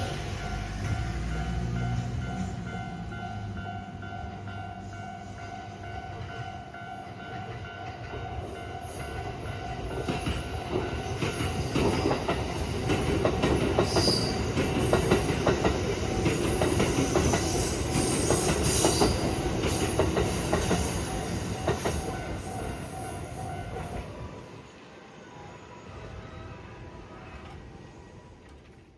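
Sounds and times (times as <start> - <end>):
train wheels clacking: 5.9 - 24.1.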